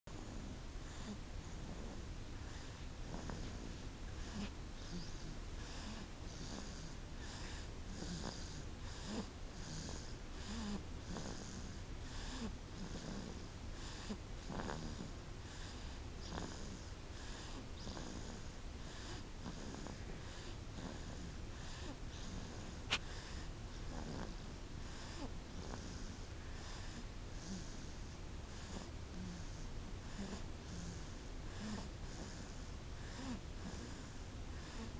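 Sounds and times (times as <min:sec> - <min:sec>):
soft wheezy snoring: 0:00.1 - 0:34.9.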